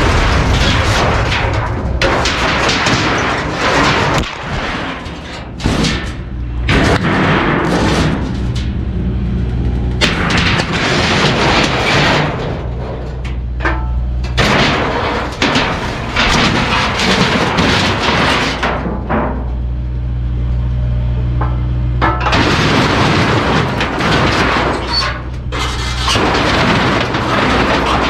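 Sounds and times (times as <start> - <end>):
debris crashing and rattling: 0.0 - 19.7, 21.4 - 28.0
diesel engine running: 0.0 - 28.0.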